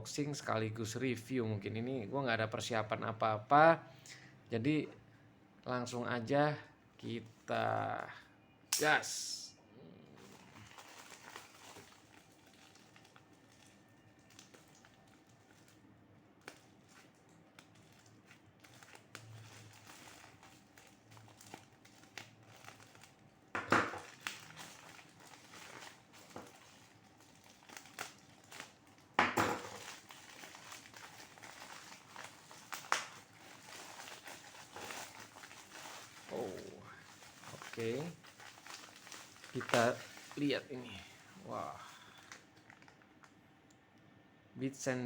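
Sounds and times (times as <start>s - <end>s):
plastic wrapping crinkling: 10.2s - 43.4s
packaging ripping: 10.4s - 15.8s, 16.4s - 23.2s, 24.0s - 43.0s.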